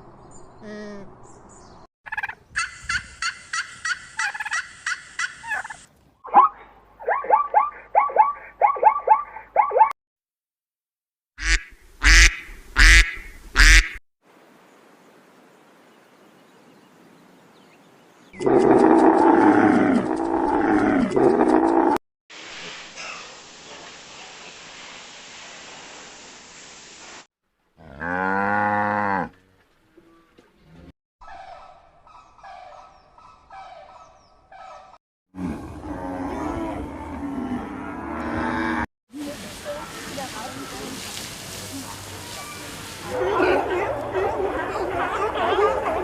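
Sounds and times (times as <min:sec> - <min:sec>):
faint hiss: 0:22.3 - 0:27.3, 0:39.2 - 0:43.2.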